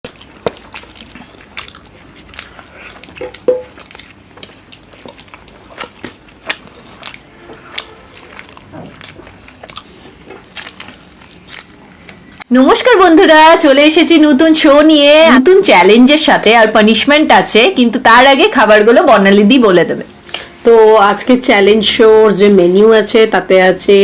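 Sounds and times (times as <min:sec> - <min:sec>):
biting and chewing food: 0:00.0 - 0:12.4.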